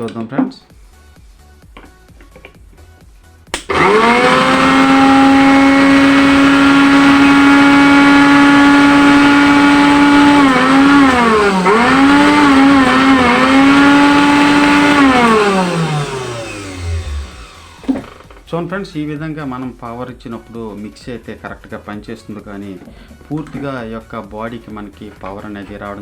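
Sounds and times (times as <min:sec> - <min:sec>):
mixer grinder motor whining: 0:03.6 - 0:18.5.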